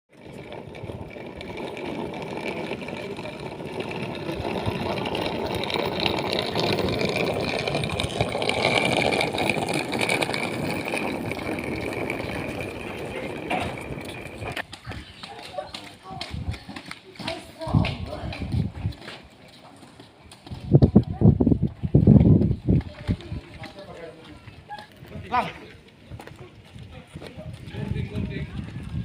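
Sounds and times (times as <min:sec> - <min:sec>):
suitcase wheels rolling: 0:00.1 - 0:15.6.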